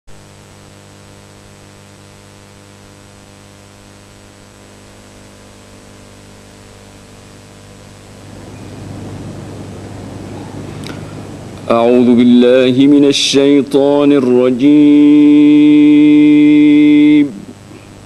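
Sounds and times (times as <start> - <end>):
faint high whine: 0.1 - 18.0
low electrical hum: 0.1 - 18.0
steady hiss: 0.2 - 18.0
rough loud noise: 8.1 - 18.0.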